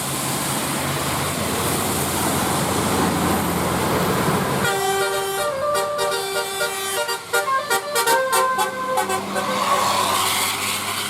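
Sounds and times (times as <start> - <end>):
bus musical air horn: 4.6 - 11.0
loud rushing noise: 8.4 - 11.0.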